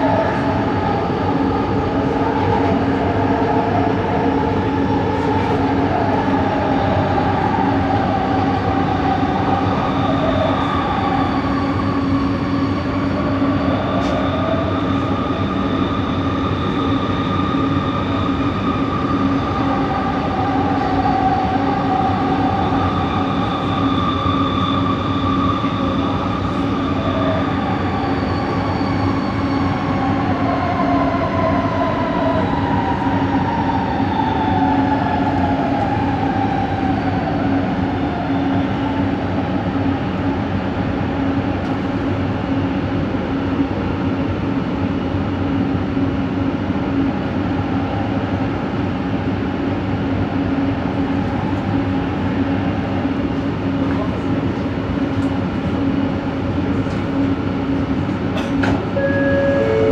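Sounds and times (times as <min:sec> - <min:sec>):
train running noise: 0:00.0 - 0:59.9
high whining motor tones: 0:59.0 - 0:59.9.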